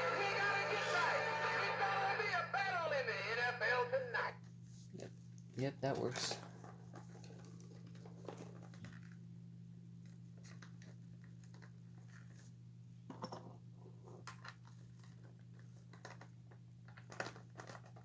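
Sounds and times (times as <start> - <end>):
low electrical hum: 0.0 - 18.0
plastic parts clicking and rustling: 14.2 - 18.0.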